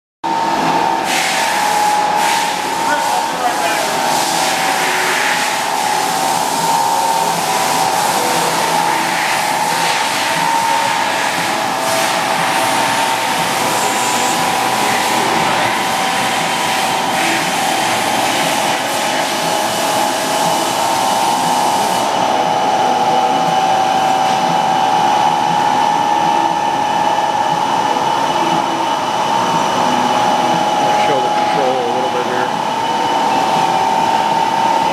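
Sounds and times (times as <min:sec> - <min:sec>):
held whine: 0:00.3 - 0:34.9
machinery whirring: 0:00.3 - 0:34.9.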